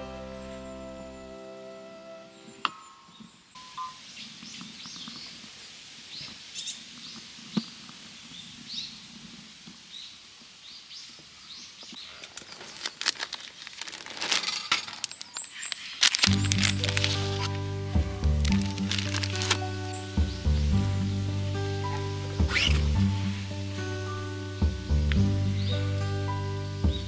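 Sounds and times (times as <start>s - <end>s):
small birds chirping: 2.2s - 13.4s, 15.0s - 27.0s
sharp clicks and crackles: 12.0s - 17.6s, 18.2s - 20.1s.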